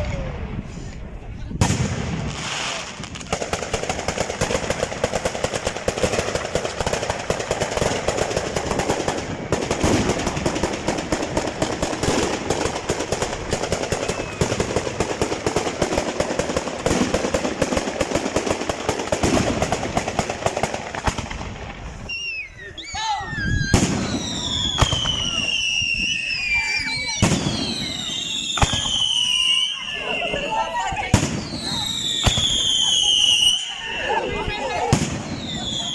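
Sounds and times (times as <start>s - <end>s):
fireworks cracking and banging: 0.0s - 22.4s, 23.4s - 35.9s.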